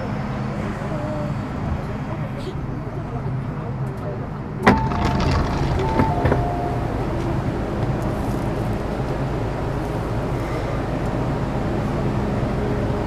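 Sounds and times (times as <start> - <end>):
train rumble: 0.0 - 13.0
sharp clunk: 4.6 - 6.8.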